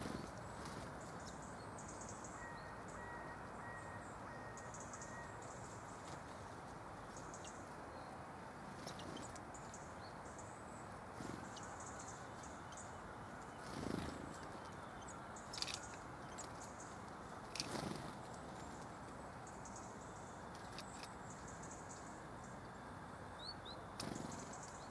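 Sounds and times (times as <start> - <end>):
birds pecking and landing: 0.0 - 1.3, 13.5 - 14.8, 15.4 - 19.2, 24.0 - 24.8
faint high-pitched bird calls: 0.0 - 6.2.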